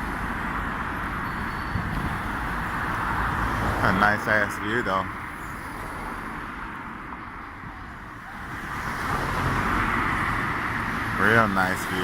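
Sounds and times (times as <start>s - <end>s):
road traffic hum: 0.0s - 12.0s.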